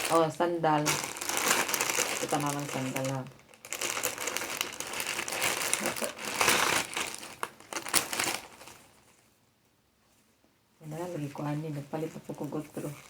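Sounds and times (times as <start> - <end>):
packaging rustling and crinkling: 0.0 - 9.3, 11.3 - 13.0.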